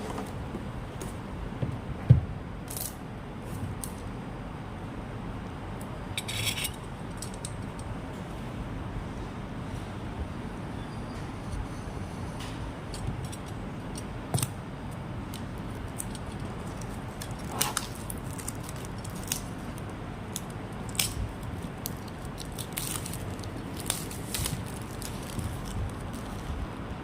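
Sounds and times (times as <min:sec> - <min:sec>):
low background rumble: 0:00.3 - 0:27.0
packaging clicks and crinkles: 0:13.0 - 0:26.6.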